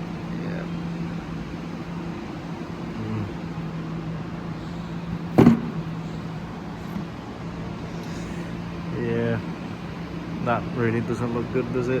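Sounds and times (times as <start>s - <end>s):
steady low hum: 0.0s - 12.0s
sharp knock: 5.4s - 5.8s.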